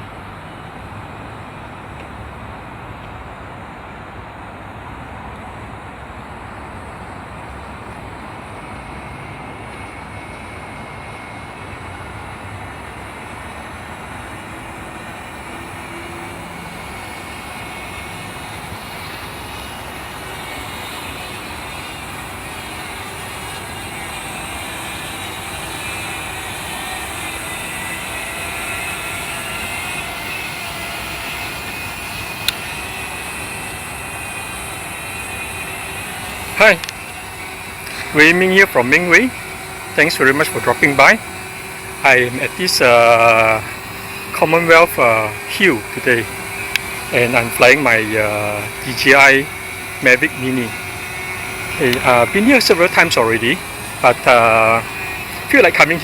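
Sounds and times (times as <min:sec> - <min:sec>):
drone propellers whirring: 0:00.0 - 0:56.0.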